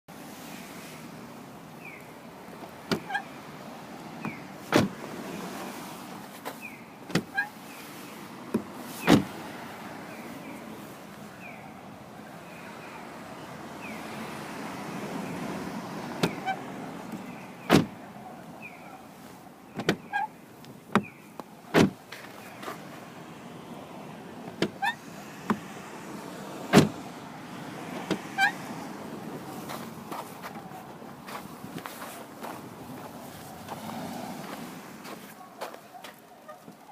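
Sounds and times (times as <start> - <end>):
car door clunks: 2.9 - 3.2, 4.2 - 5.0, 7.1 - 7.5, 8.5 - 9.4, 16.2 - 16.6, 17.6 - 18.0, 19.8 - 20.3, 20.9 - 22.0, 24.5 - 25.7, 26.7 - 27.0
car door hinge squeaking: 2.9 - 3.3, 7.1 - 7.6, 16.2 - 16.6, 19.8 - 22.0, 24.6 - 25.6, 28.0 - 28.6.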